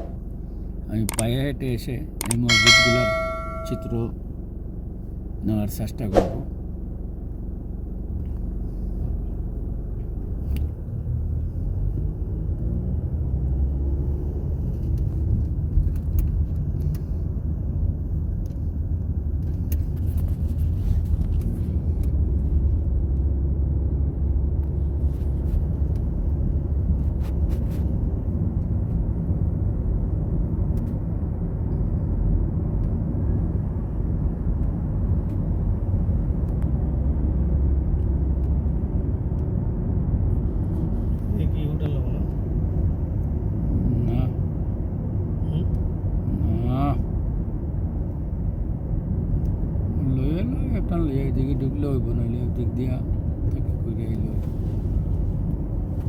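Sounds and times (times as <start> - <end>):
car engine and tyres rumbling: 0.0 - 56.0
faint light ticks: 10.0 - 10.7.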